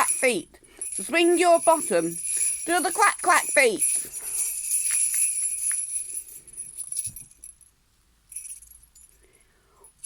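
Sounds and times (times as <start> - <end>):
jingle bells shaking: 0.0 - 10.0.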